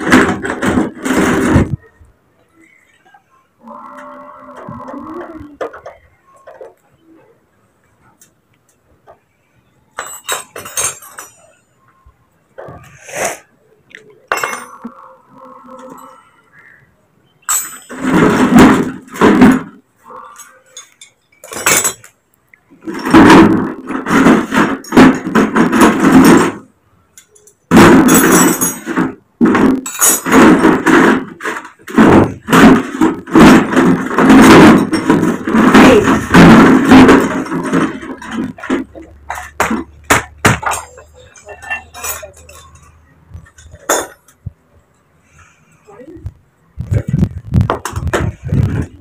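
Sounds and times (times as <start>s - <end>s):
metal parts knocking and clattering: 0.0s - 1.8s, 4.6s - 6.9s, 9.0s - 11.6s, 14.2s - 14.9s, 17.4s - 44.5s, 46.8s - 49.0s
metal tools clinking: 9.9s - 11.6s, 14.3s - 14.9s, 17.4s - 18.4s, 20.2s - 22.2s, 27.2s - 29.2s, 29.8s - 31.8s, 33.7s - 44.4s.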